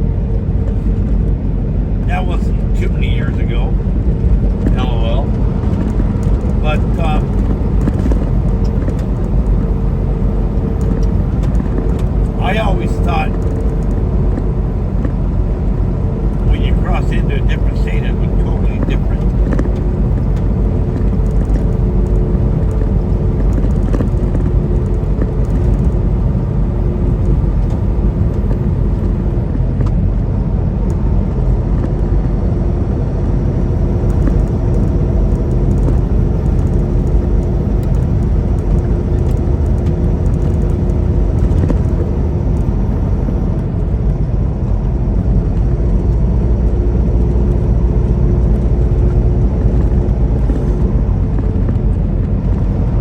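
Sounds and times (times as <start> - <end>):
constant hum: 0.0 - 53.0
road and tyre noise: 0.0 - 53.0
truck engine drone: 0.0 - 53.0.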